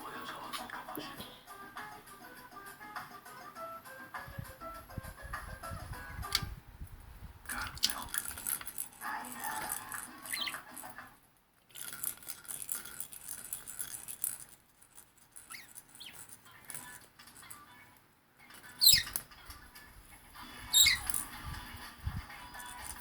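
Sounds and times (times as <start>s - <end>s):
toy balls rattling and clicking: 7.5s - 11.0s, 11.6s - 17.8s, 18.5s - 19.9s, 20.6s - 23.0s.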